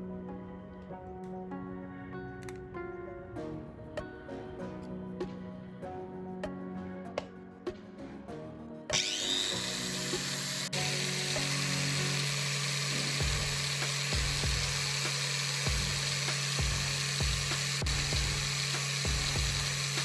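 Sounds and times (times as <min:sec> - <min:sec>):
power tool whining: 0:08.9 - 0:20.0.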